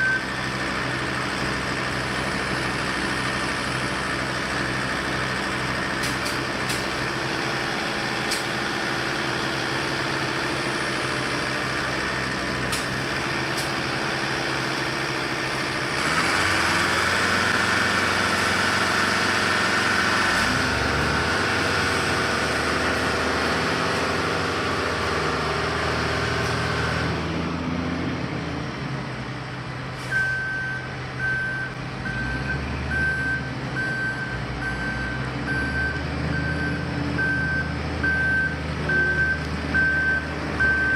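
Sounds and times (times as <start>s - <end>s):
reversing alarm beeping: 0.0s - 0.3s, 30.1s - 40.9s
heavy machinery engines running: 0.0s - 40.9s.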